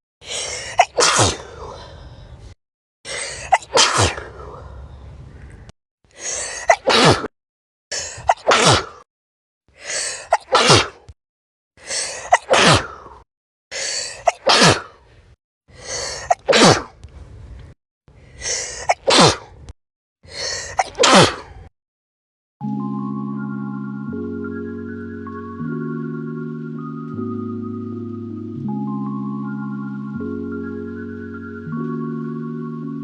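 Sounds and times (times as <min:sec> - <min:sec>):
person sneezing: 0:00.3 - 0:01.7, 0:03.1 - 0:04.3, 0:06.2 - 0:07.3, 0:08.0 - 0:09.0, 0:09.9 - 0:11.1, 0:12.0 - 0:13.0, 0:13.8 - 0:15.0, 0:16.1 - 0:17.0, 0:18.4 - 0:19.5, 0:20.3 - 0:21.6.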